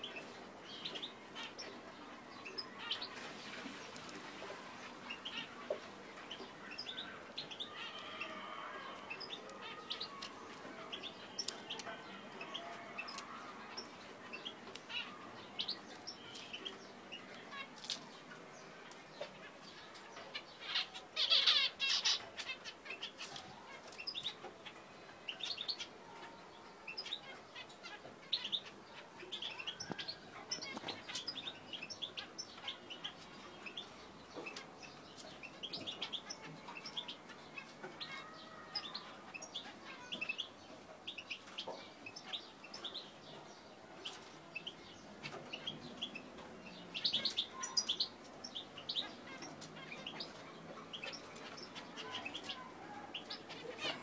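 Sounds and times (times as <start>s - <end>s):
zebra finches chirping: 0.0s - 54.0s.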